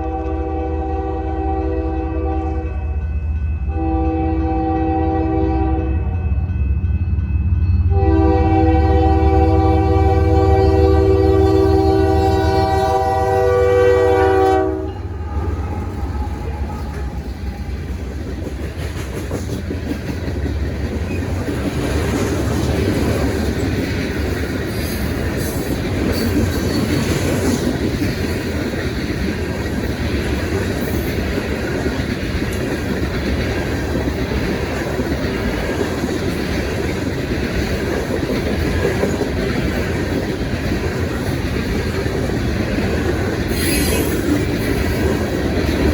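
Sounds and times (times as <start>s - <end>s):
train air horn chord: 0.0s - 3.1s, 3.7s - 6.2s, 7.9s - 17.4s
freight cars rumbling on rails: 0.0s - 45.9s.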